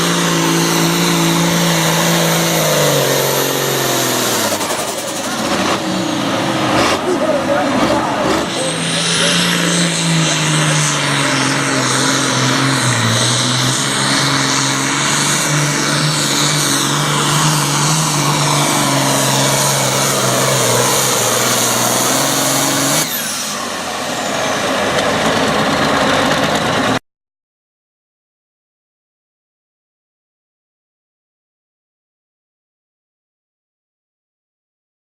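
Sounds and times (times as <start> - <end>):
tractor diesel engine revving: 0.0 - 27.0.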